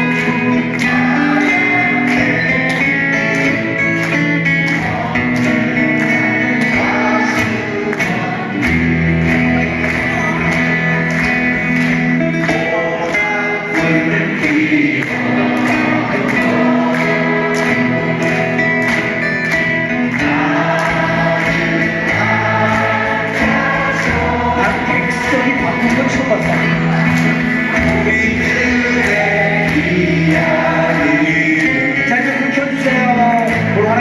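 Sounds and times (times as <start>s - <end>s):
crowd singing along: 0.0s - 34.0s
live band with guitar: 0.0s - 34.0s.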